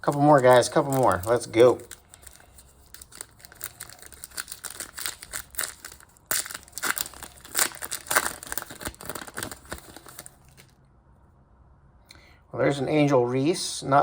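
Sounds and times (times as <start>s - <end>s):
wrapper crinkling: 0.0s - 10.8s
cards being handled: 0.1s - 10.7s.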